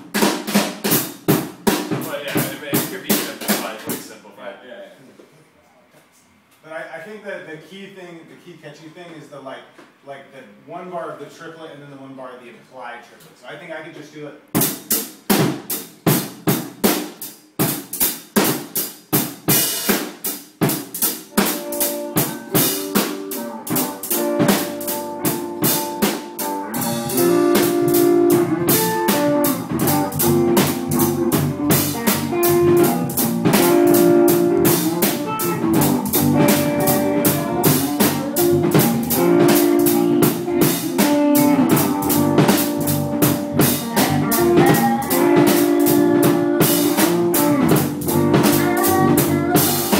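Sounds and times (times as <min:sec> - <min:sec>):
full band playing: 0:00.0 - 0:04.1, 0:14.6 - 0:49.9
drum kit snare and rimshot hits: 0:00.0 - 0:04.2, 0:14.6 - 0:49.9
guitar notes: 0:21.3 - 0:49.9.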